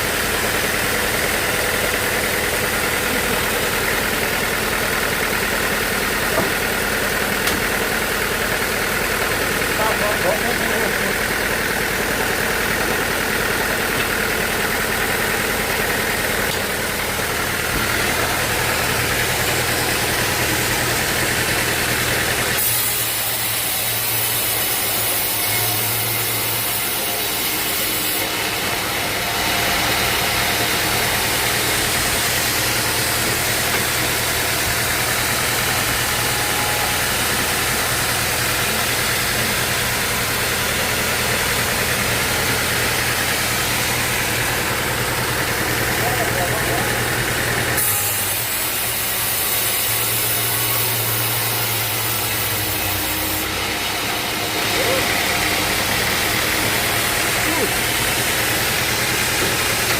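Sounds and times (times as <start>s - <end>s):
engine running steadily: 0.0s - 59.9s.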